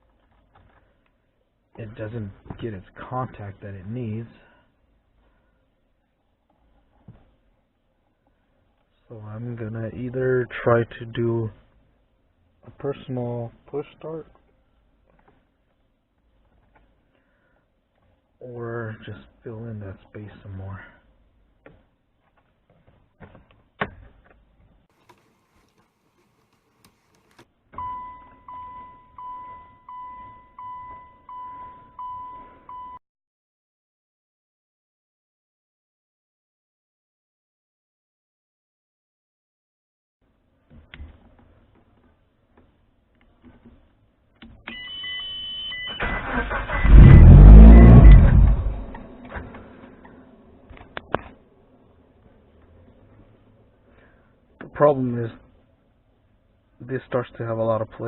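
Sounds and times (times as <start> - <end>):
car warning chime: 27.8 - 33.0, 44.7 - 46.1
dashboard electronic beep: 27.8 - 33.0
car engine cranking and revving: 46.0 - 51.1.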